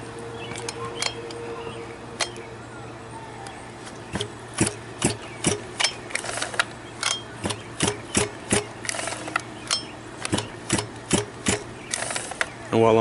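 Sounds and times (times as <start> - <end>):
sharp mechanical clicks: 4.0 - 12.6.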